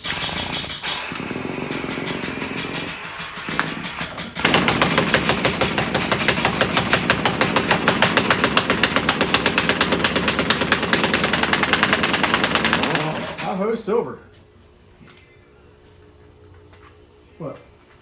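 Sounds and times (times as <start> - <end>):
impact wrench hammering: 0.0 - 13.5.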